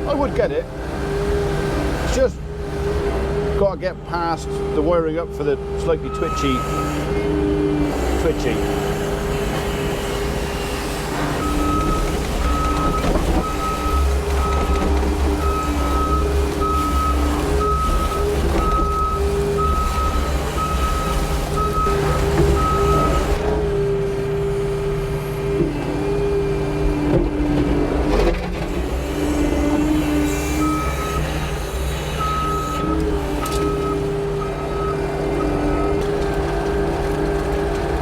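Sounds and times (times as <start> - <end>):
diesel engine running: 0.0 - 38.0
reversing alarm beeping: 6.1 - 7.0, 11.4 - 23.3, 30.6 - 31.4, 32.1 - 36.0.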